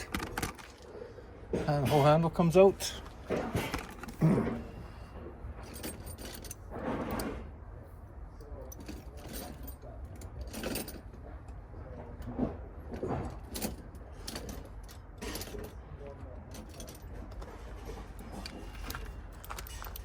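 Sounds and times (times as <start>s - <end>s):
metal clinks and rattles: 5.6s - 7.4s, 8.5s - 11.6s, 12.2s - 20.0s.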